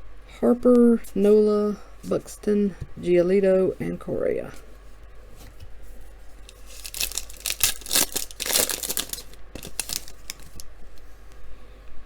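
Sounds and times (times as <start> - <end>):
foil wrapper tearing and crinkling: 6.5 - 10.7.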